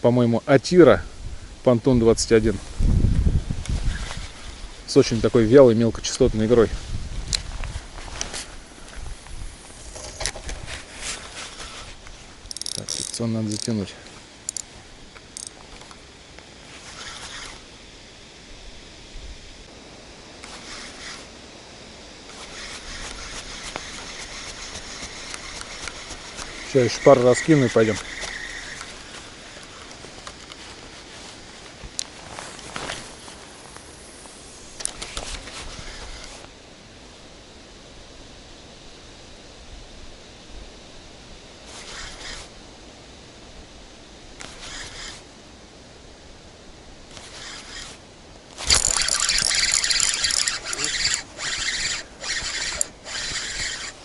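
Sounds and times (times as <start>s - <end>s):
wind noise: 0.9s - 15.5s
fishing reel whirring and ticking: 12.5s - 13.8s, 14.4s - 14.7s, 15.3s - 15.6s, 16.9s - 17.6s, 20.4s - 21.3s, 22.3s - 30.0s, 41.8s - 42.5s, 44.4s - 45.2s, 47.1s - 48.0s, 48.6s - 54.0s.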